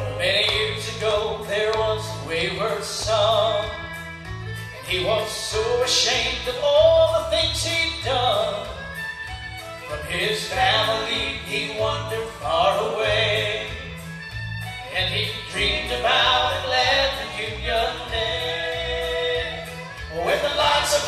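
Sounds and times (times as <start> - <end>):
instrumental accompaniment: 0.0 - 21.0
vocal group singing in harmony: 15.1 - 21.0.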